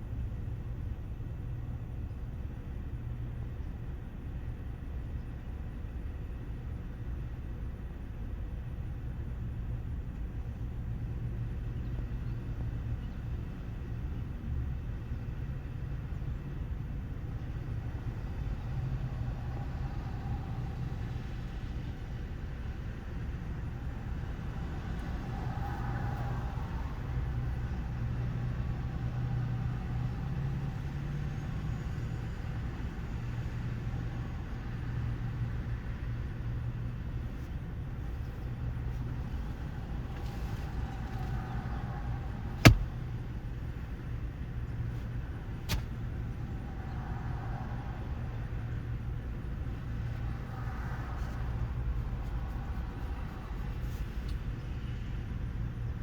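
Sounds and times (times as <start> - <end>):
vehicle engine idling: 36.6 - 47.0
sharp click: 42.6 - 42.9.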